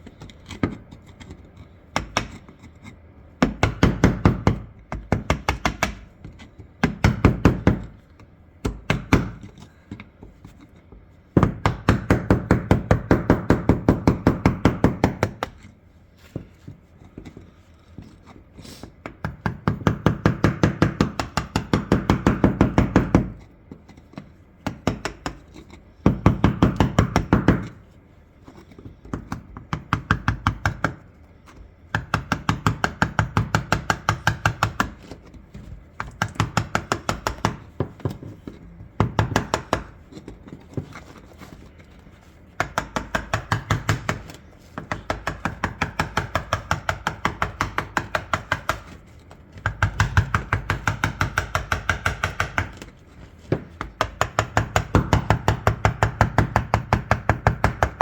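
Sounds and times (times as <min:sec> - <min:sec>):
tool tapping on metal: 0:42.4 - 0:58.0.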